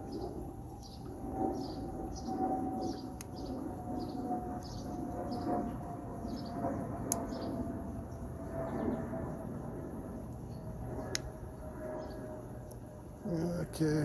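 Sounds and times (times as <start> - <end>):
birds scolding chirps: 0.0 - 9.0
aeroplane drone overhead: 0.0 - 14.0.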